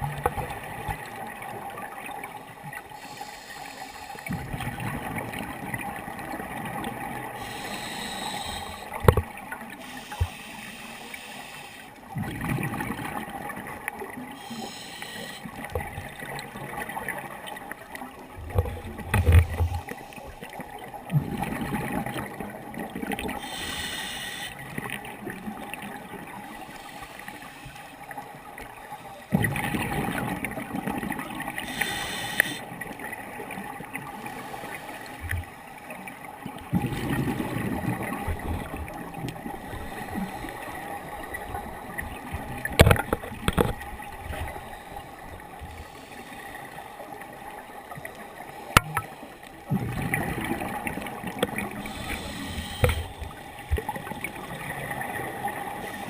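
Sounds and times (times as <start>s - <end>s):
regulator inhalation hiss: 3.0s - 4.3s, 7.4s - 9.0s, 9.8s - 11.9s, 14.4s - 15.5s, 23.4s - 24.6s, 31.6s - 32.6s, 51.8s - 53.3s
exhaled bubbles: 12.1s - 13.8s, 36.7s - 40.5s
sharp clicks and knocks: 42.7s - 43.8s, 48.8s - 49.1s.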